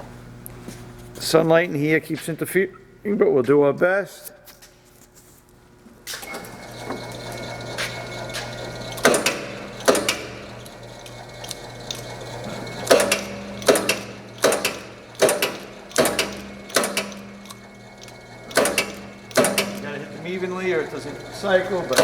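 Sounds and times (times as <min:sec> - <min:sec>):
punch press motor humming: 0:06.2 - 0:22.0
punch press ram clanking: 0:06.4 - 0:22.0.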